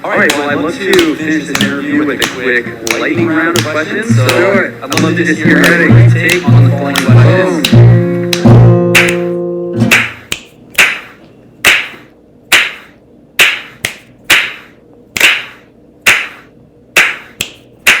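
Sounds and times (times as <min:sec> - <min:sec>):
finger snapping: 0:04.3 - 0:09.3, 0:09.9 - 0:18.0.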